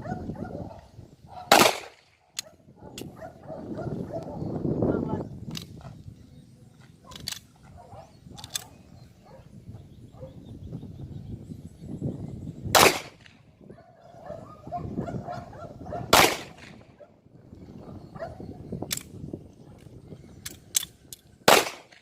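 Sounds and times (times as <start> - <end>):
handgun shots: 1.5 - 3.1, 12.8 - 13.3, 16.1 - 16.8, 21.5 - 22.0.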